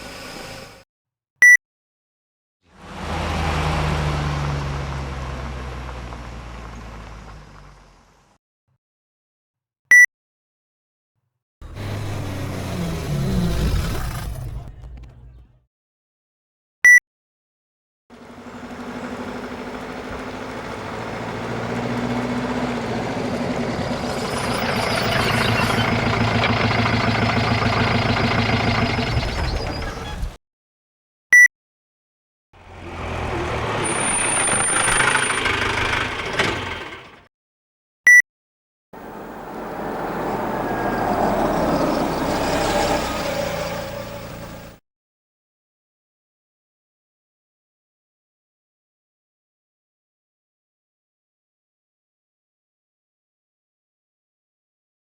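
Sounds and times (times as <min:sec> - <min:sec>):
high squeal: 0:00.0 - 0:00.8, 0:22.0 - 0:30.4, 0:33.1 - 0:36.8, 0:39.0 - 0:44.8
car engine running: 0:11.6 - 0:15.6, 0:18.1 - 0:30.4, 0:32.6 - 0:37.2
electronic beep: 0:24.1 - 0:26.0.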